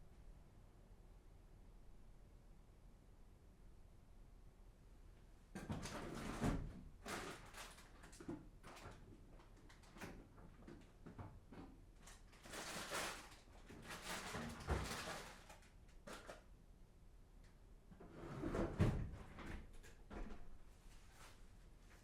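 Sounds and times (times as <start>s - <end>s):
household scrapes and rustles: 12.1s - 16.4s, 18.0s - 19.1s, 20.3s - 22.0s.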